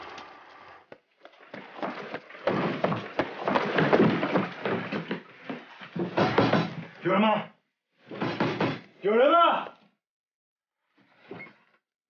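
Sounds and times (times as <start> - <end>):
people running in boots: 1.3 - 6.8.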